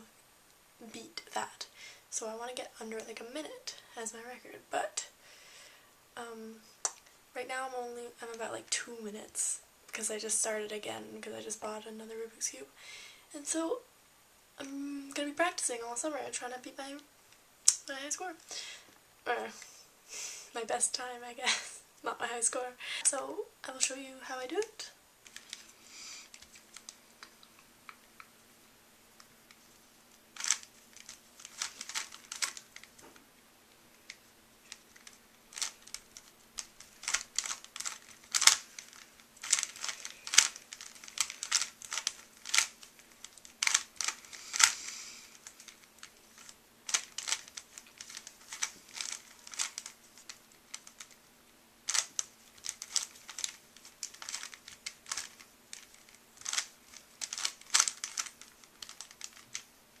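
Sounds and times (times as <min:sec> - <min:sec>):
puzzle cube plastic clicks: 0:30.1 - 0:33.0, 0:33.8 - 0:51.2, 0:51.9 - 1:00.0.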